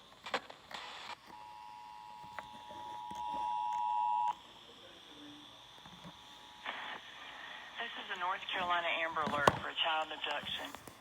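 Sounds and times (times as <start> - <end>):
radio static bursts: 6.6 - 10.8.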